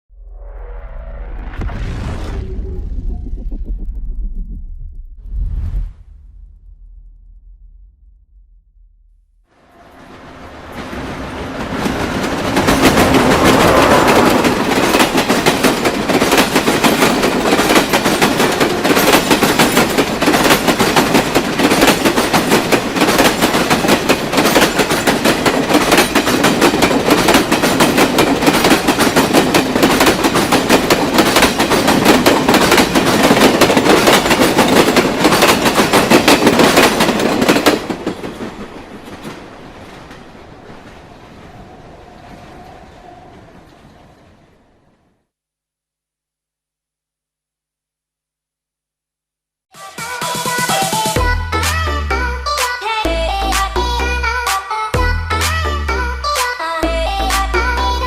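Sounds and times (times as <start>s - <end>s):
train wheels clattering over rails: 10.0s - 44.7s.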